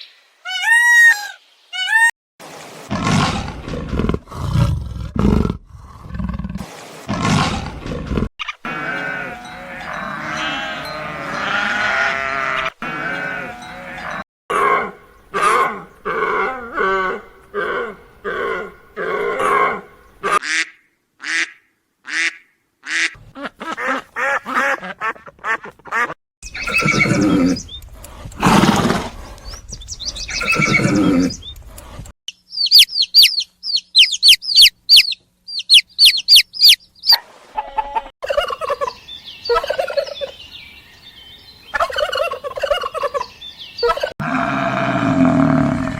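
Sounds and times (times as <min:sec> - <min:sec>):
farm animal calls: 0:08.6 - 0:20.6, 0:22.9 - 0:31.7, 0:32.5 - 0:40.3, 0:41.7 - 0:45.9
rapid high chirps: 0:32.3 - 0:36.9.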